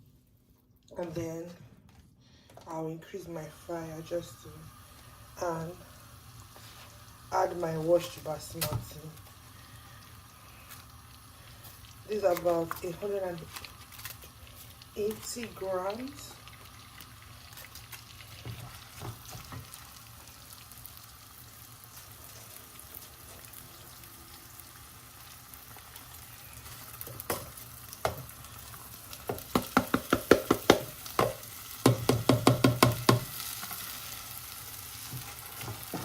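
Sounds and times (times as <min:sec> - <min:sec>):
rice sizzling in butter: 0:03.5 - 0:36.0.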